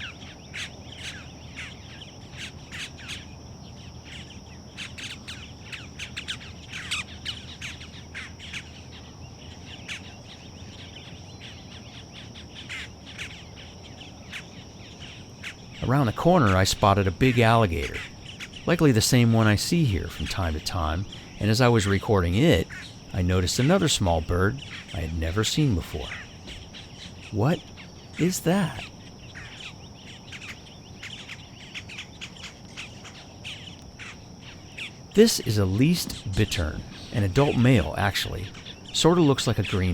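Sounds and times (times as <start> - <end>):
birds chirping: 0.0 - 39.9
high-pitched insect drone: 0.0 - 39.9.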